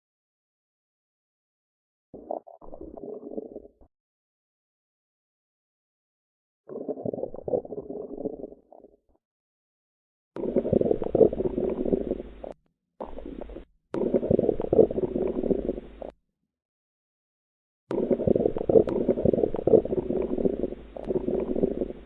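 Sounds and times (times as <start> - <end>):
bowel gurgling and rumbling: 2.2 - 3.9, 6.7 - 9.1, 10.4 - 16.2, 17.9 - 22.0.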